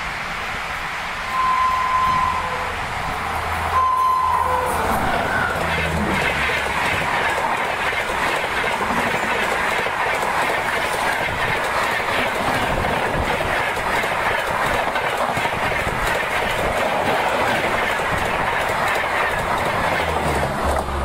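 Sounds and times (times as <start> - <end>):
short tone: 1.3 - 2.8, 3.7 - 4.8
train wheels clattering over rails: 4.8 - 21.0.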